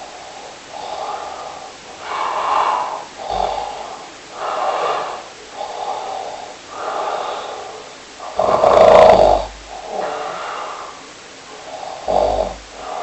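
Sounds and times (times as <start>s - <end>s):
loud snoring: 2.1s - 4.0s, 8.2s - 10.6s, 11.7s - 13.0s.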